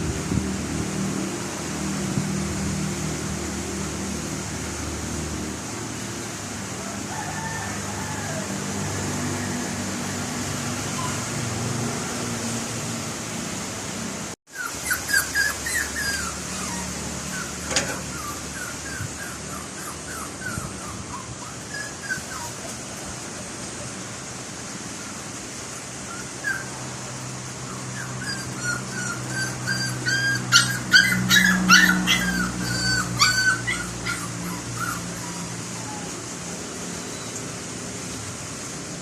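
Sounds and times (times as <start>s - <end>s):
dog whimpering and yipping: 10.6s - 11.6s, 14.5s - 23.0s, 26.0s - 26.9s, 27.6s - 36.3s.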